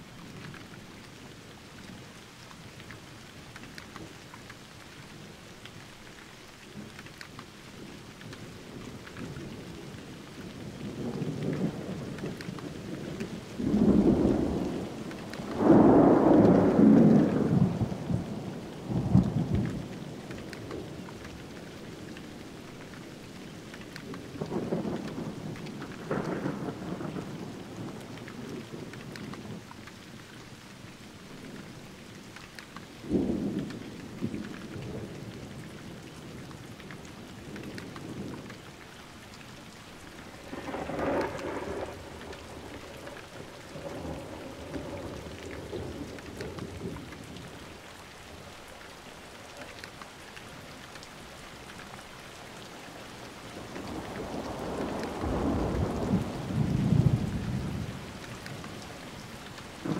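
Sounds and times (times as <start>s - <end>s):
steady rain falling: 0.0s - 59.9s
sharp thunderclap: 13.6s - 18.3s, 40.4s - 47.2s, 53.9s - 57.9s
thunder rolling: 13.6s - 19.7s, 40.2s - 47.4s, 53.6s - 57.9s.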